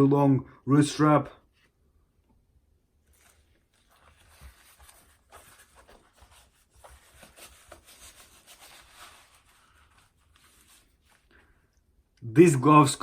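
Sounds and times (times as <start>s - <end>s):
glove fabric and latex rustling: 3.0s - 11.7s.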